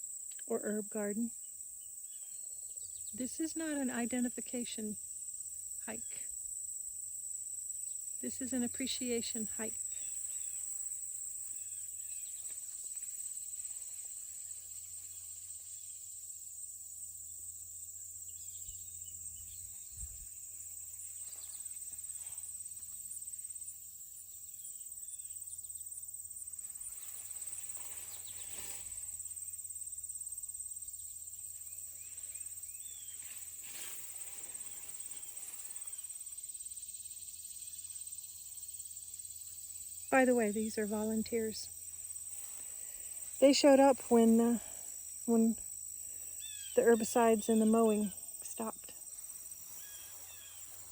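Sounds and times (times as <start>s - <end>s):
insect chorus trilling: 0.0s - 50.9s
faint rustles: 26.6s - 29.4s, 31.9s - 36.2s, 40.5s - 50.9s.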